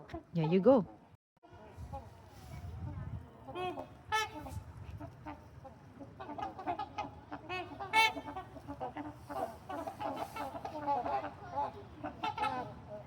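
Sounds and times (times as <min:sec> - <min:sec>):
swans trumpeting honks: 0:06.2 - 0:13.0.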